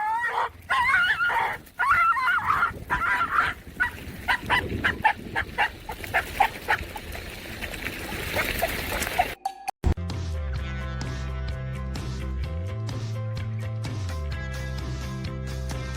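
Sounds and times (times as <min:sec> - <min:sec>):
dog yipping: 0:00.0 - 0:06.9, 0:08.1 - 0:09.4.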